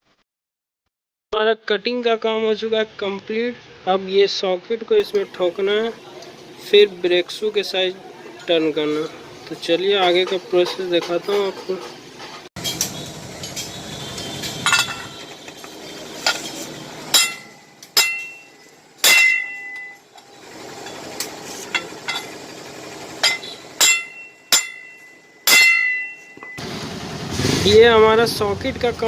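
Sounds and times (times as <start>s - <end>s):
hammer blows on metal: 17.1s - 20.0s, 23.2s - 26.6s.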